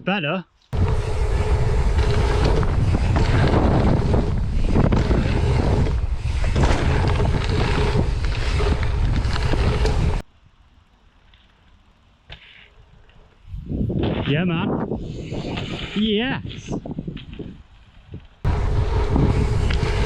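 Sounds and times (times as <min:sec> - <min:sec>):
wind buffeting microphone: 0:00.8 - 0:10.2, 0:13.4 - 0:20.0.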